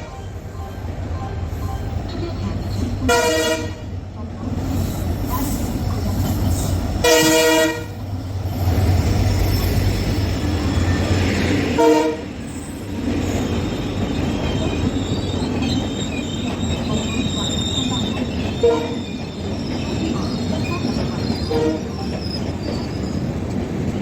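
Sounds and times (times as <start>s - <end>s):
locomotive horn blasts: 3.1s - 4.0s, 7.0s - 8.0s, 11.8s - 12.3s, 18.6s - 19.0s.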